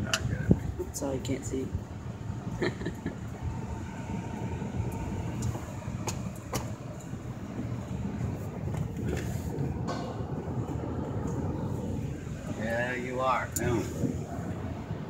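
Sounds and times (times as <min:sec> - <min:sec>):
car wash machinery rumble: 0:00.0 - 0:15.0
sharp clicks and knocks: 0:05.4 - 0:07.1.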